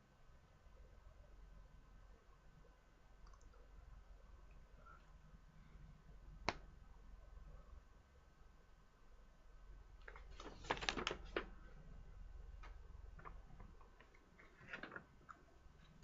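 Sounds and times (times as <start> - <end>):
plastic crinkling: 10.0 - 11.5, 13.2 - 16.0.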